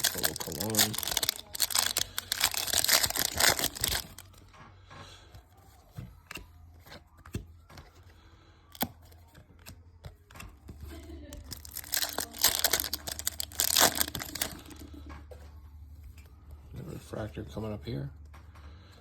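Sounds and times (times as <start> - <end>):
wrapper tearing and crinkling: 0.0 - 4.4, 11.4 - 14.8
cards clicking and tapping: 6.0 - 8.1.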